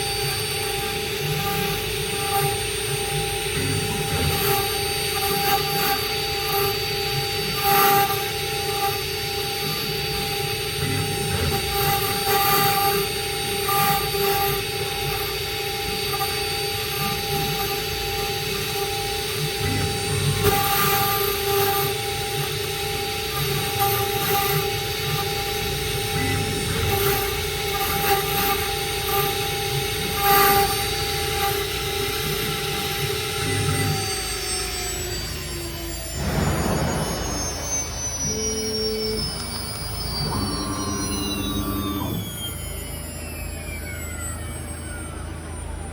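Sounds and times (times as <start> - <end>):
cnc router spindle whine: 0.0 - 45.9
cutting noise surges: 25.1 - 45.9.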